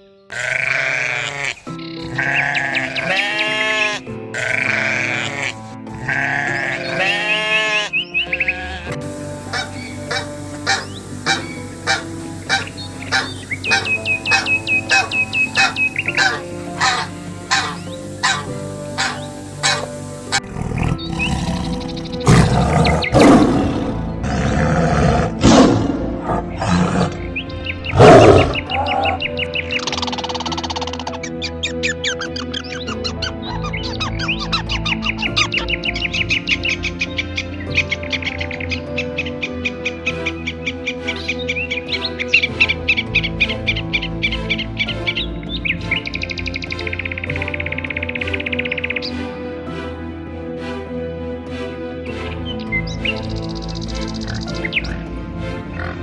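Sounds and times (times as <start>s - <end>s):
background music: 0.0s - 56.0s
sheep bleating: 0.3s - 9.0s
large animal roaring: 20.4s - 27.2s, 27.9s - 29.2s.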